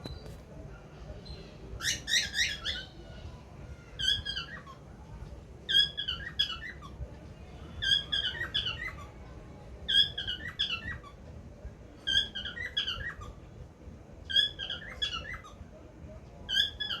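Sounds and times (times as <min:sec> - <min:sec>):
bird calling squeaky notes: 0:01.2 - 0:03.0.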